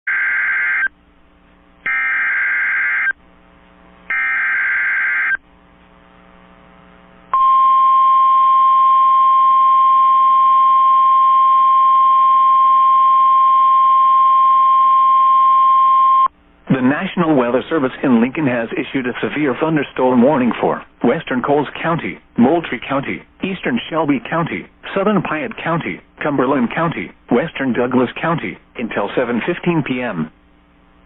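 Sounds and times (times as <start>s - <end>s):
steady attention tone: 6.1s - 16.4s.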